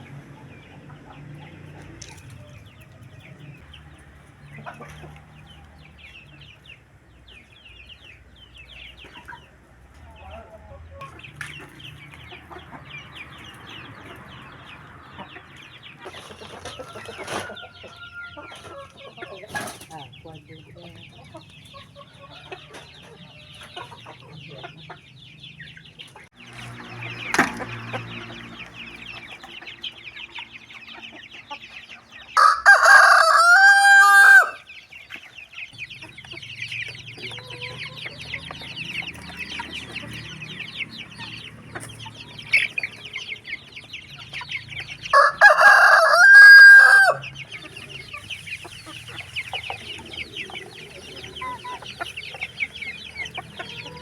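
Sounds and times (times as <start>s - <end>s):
chickens clucking quietly: 0.0s - 54.0s
rooster crowing: 17.0s - 18.6s, 32.4s - 34.7s, 45.1s - 47.3s.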